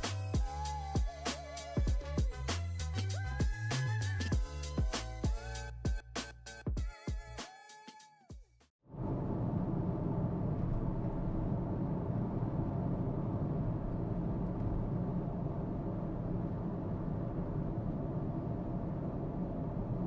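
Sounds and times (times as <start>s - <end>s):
music: 0.0s - 8.7s
car road and engine noise: 8.9s - 20.0s.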